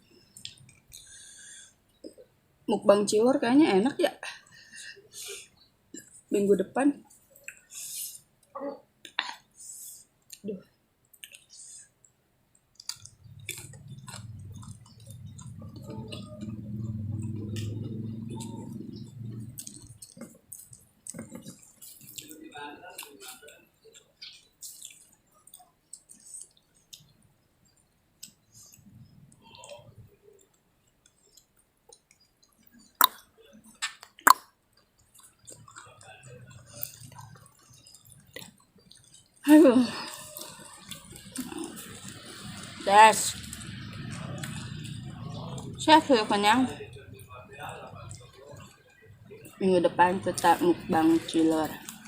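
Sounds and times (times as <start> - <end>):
chewing mouth clicks and smacks: 0.2 - 2.3, 7.1 - 9.4, 10.2 - 45.8, 48.0 - 49.6, 51.2 - 52.0
low steady hum: 12.5 - 23.6, 35.2 - 52.0
mouth smacking clicks: 12.6 - 22.4, 28.2 - 39.4.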